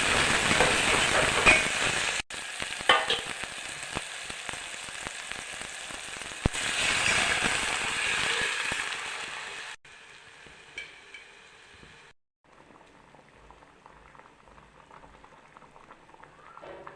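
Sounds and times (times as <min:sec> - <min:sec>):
food sizzling in a hot pan: 0:00.0 - 0:12.1.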